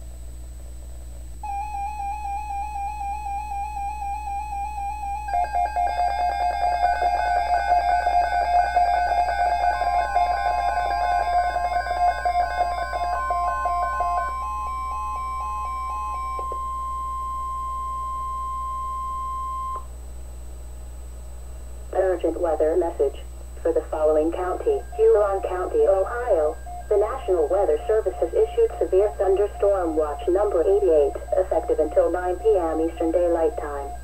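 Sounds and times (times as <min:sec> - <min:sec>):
electronic music with synth melody: 0:01.5 - 0:18.7.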